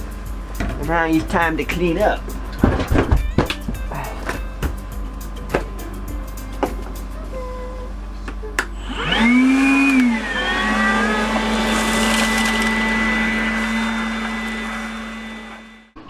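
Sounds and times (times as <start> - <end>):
vacuum cleaner motor whine: 7.3 - 16.0.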